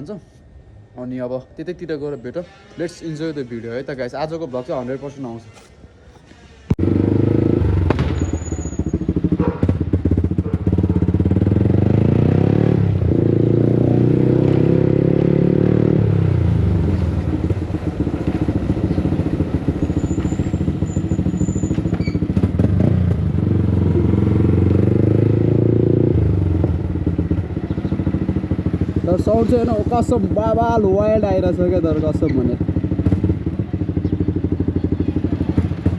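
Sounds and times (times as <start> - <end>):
motorcycle engine revving: 6.8 - 35.9.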